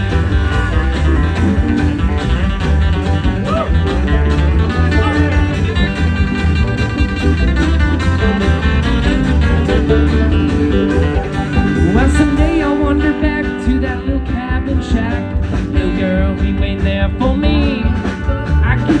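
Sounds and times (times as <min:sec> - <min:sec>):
acoustic string band playing: 0:00.0 - 0:19.0.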